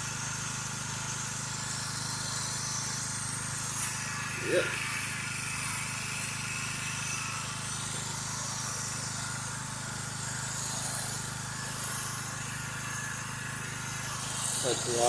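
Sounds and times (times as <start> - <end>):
pressure washer engine running: 0.0 - 15.0
spray hissing: 13.8 - 15.0.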